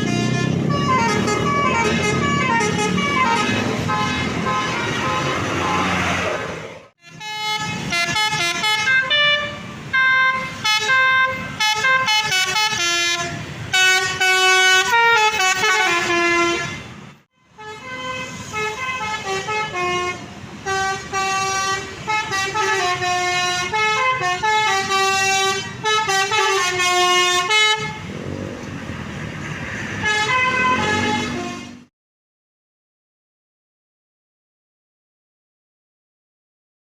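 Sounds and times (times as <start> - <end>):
musical bus air horn: 0.0 - 6.0, 7.0 - 28.1, 30.0 - 31.9
engines and traffic hum: 0.0 - 31.9.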